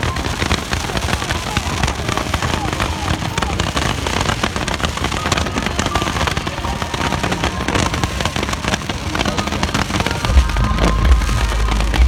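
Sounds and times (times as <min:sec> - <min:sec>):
fireworks crackling and banging: 0:00.0 - 0:12.0
deep rumble: 0:10.3 - 0:12.0.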